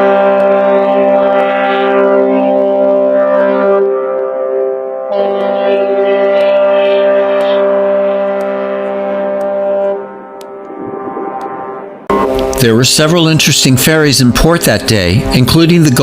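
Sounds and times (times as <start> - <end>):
ship's horn chord: 0.0 - 15.6.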